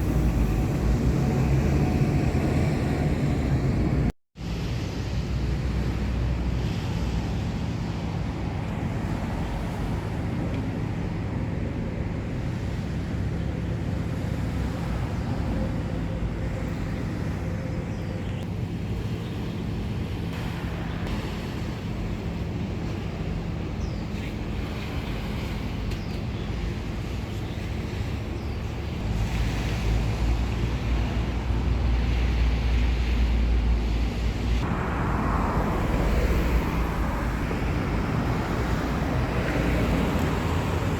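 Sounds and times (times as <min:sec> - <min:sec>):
wind blowing over microphone: 0:30.0 - 0:40.9.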